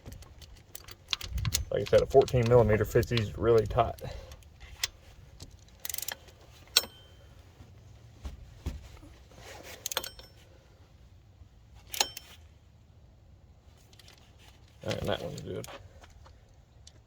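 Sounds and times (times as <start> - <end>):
sharp metallic clink: 6.8 - 7.3, 12.0 - 12.4.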